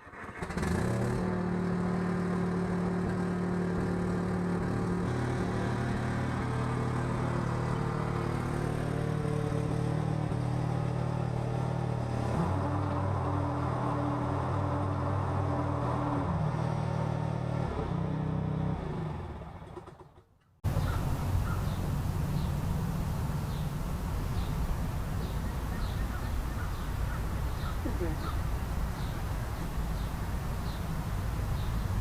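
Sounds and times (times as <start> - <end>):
lawn tractor engine running: 0.0 - 12.0, 20.7 - 32.0
outdoor background noise: 0.0 - 32.0
bird chirping: 20.7 - 32.0.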